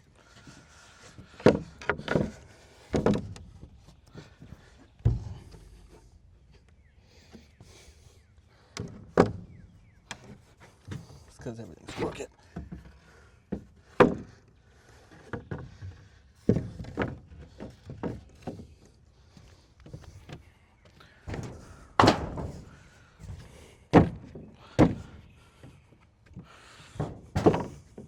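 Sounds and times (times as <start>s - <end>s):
wooden deck boards knocking: 1.2s - 6.0s, 13.5s - 14.4s, 21.3s - 25.2s, 26.4s - 28.0s.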